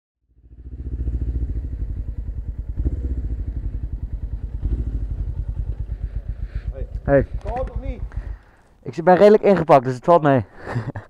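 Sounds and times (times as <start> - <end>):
motorcycle engine running: 0.2 - 8.7.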